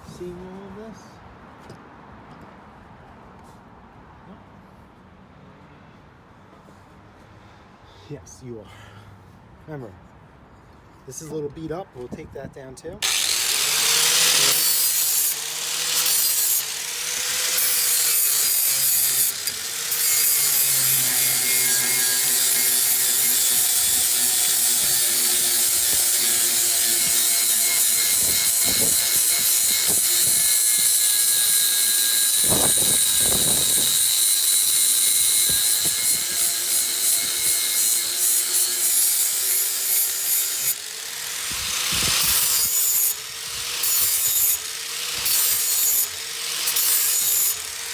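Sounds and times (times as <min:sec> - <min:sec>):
angle grinder grinding steel: 0:13.0 - 0:47.9.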